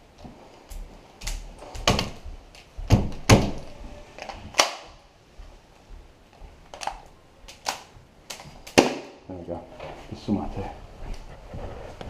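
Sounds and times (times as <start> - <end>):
sharp knocks and heavy thuds: 1.8 - 4.0.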